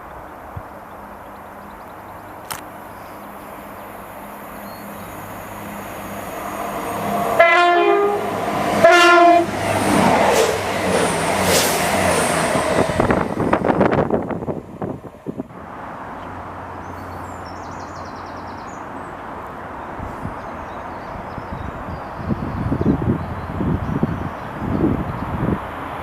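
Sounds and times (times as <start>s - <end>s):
train wheels rumbling on rails: 3.4s - 15.7s
train horn blasts: 7.0s - 10.6s.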